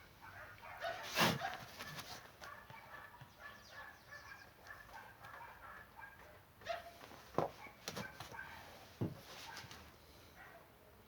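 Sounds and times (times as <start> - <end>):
dog barking: 0.2 - 8.6, 9.4 - 9.8, 10.4 - 10.7.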